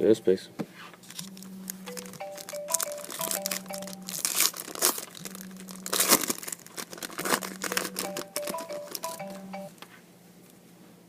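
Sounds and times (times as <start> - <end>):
cards rustling and crinkling: 1.0 - 9.4
background music: 1.2 - 6.2, 7.4 - 9.7.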